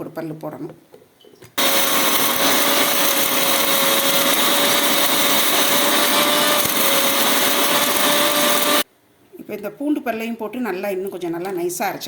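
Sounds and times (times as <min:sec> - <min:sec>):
mixer grinder running: 0:01.6 - 0:08.8.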